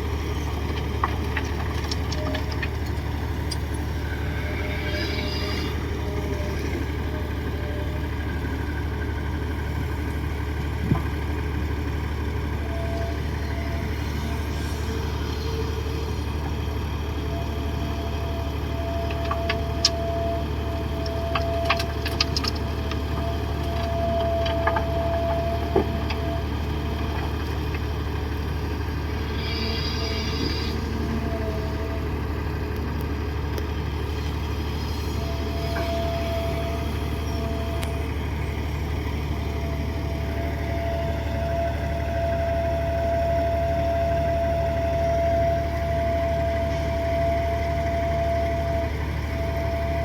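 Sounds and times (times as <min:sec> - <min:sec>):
bulldozer diesel engine rumbling: 0:00.0 - 0:50.0
thin steady whine: 0:03.3 - 0:08.8.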